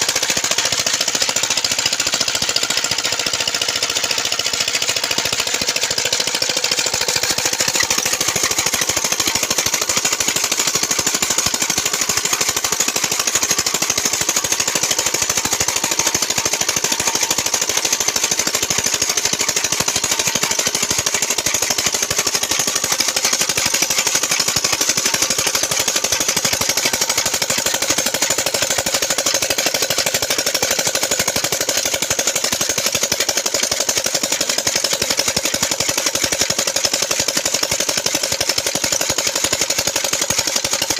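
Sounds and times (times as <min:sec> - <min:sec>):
diesel engine knocking: 0:00.0 - 0:40.9.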